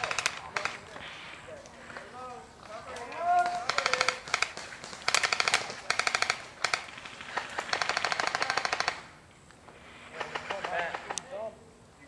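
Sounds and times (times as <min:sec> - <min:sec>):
airsoft rifle firing bursts: 0:00.0 - 0:00.8, 0:03.4 - 0:09.1.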